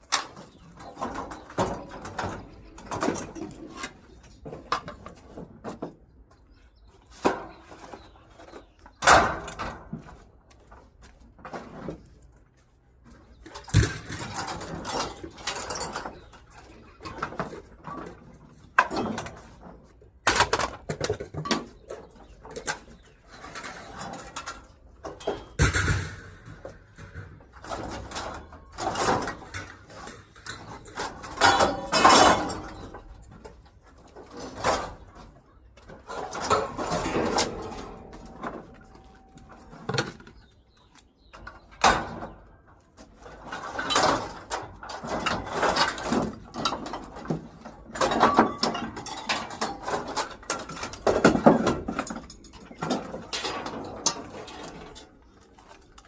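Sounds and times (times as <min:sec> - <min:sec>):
scrap metal clanking: 0:13.3 - 0:40.8, 0:43.0 - 0:56.0.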